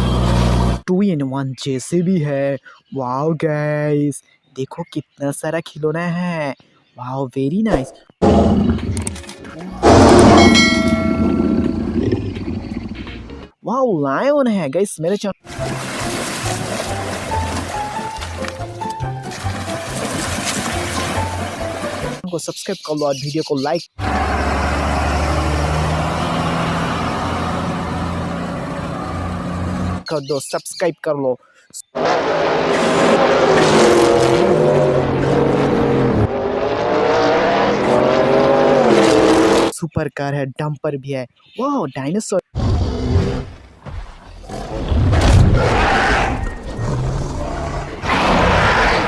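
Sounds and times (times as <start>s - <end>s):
dinosaur roar: 8.2s - 9.1s, 9.7s - 13.2s, 32.0s - 39.7s, 42.6s - 43.6s, 44.2s - 49.0s
heavy vehicle engine humming: 24.0s - 30.0s.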